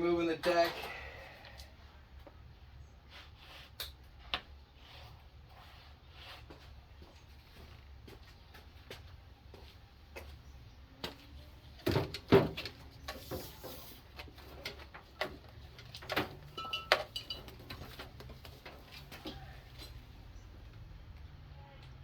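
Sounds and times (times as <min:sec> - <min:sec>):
metal tools clanking: 0:15.8 - 0:18.9.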